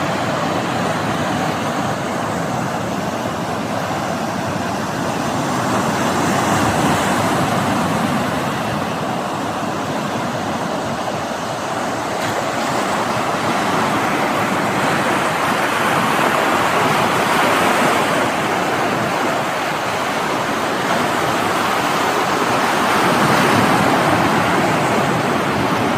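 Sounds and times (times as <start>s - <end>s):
sea waves rushing: 0.0s - 25.9s.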